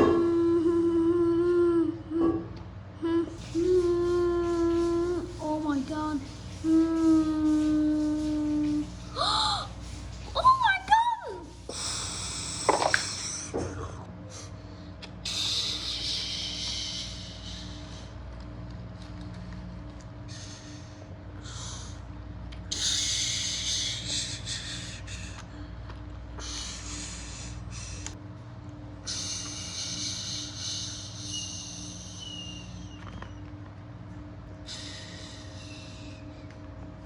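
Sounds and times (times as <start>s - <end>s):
electric motor hum: 3.4s - 10.7s.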